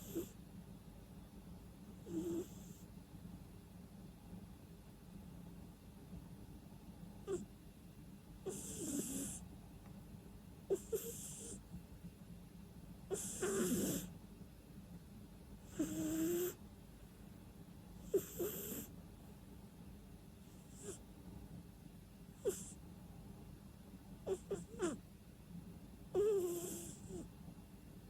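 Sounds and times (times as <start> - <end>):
cat snoring through its nose: 0.0 - 0.4, 2.0 - 2.8, 7.2 - 7.5, 8.4 - 9.4, 10.7 - 11.6, 13.1 - 14.1, 15.6 - 16.6, 18.0 - 18.9, 20.5 - 21.0, 22.4 - 22.8, 24.2 - 25.0, 26.1 - 27.3.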